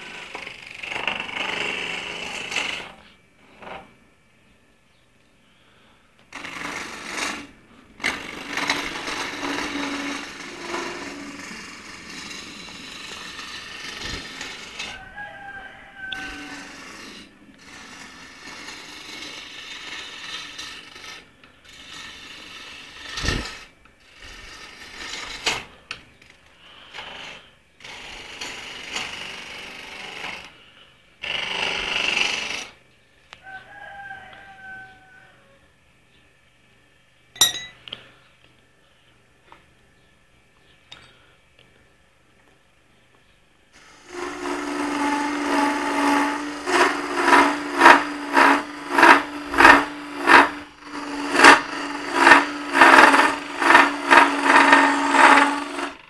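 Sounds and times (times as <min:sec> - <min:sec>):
chisel scraping spinning wood: 0:00.0 - 0:04.0, 0:06.3 - 0:30.6, 0:31.2 - 0:32.8, 0:43.8 - 0:56.0
lathe motor humming: 0:06.3 - 0:14.9, 0:16.2 - 0:23.6, 0:43.8 - 0:56.0.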